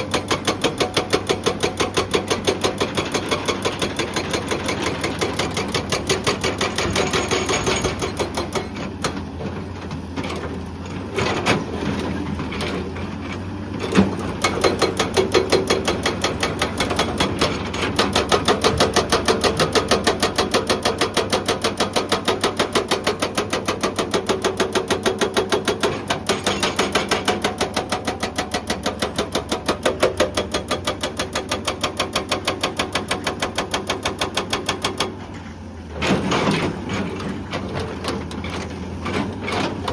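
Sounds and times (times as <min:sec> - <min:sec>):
hydraulic breaker hammering rock: 0:00.0 - 0:09.2, 0:13.8 - 0:35.3
excavator engine hum: 0:00.0 - 0:39.9.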